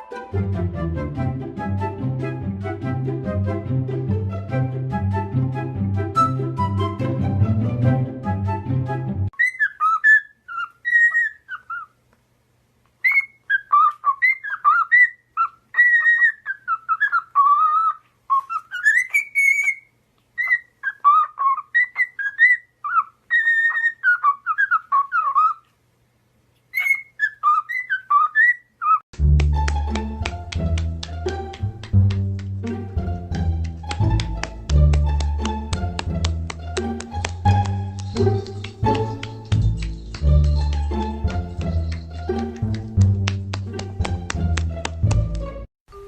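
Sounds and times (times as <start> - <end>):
background music: 0.0 - 9.3, 29.2 - 45.7
parrot whistling: 9.4 - 11.9, 26.8 - 29.0.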